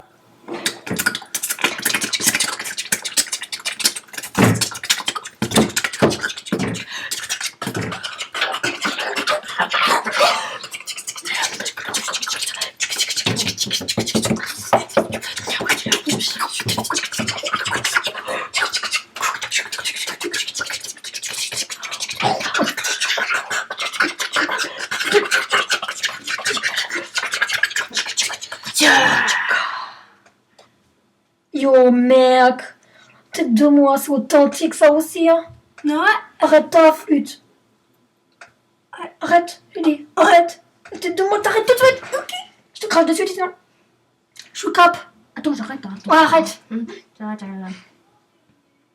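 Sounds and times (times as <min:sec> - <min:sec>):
beatboxing clicks and hisses: 0:00.5 - 0:29.4
beatboxing deep thumps: 0:00.6 - 0:10.0, 0:10.6 - 0:28.9.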